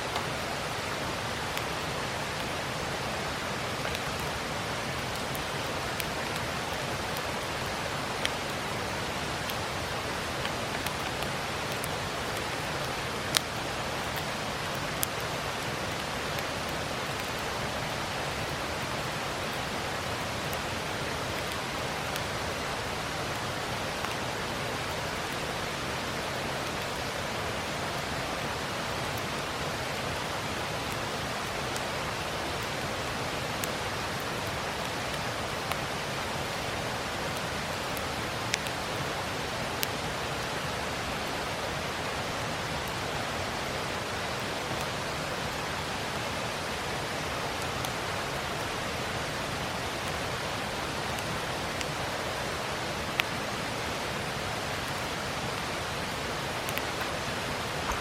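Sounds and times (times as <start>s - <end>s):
river rushing: 0.0s - 58.0s
campfire wood popping: 13.3s - 15.2s, 57.8s - 58.0s.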